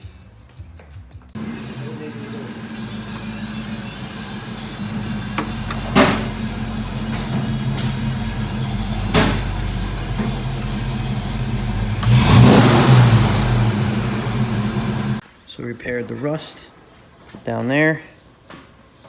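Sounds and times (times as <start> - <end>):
motor humming: 1.4 - 15.2.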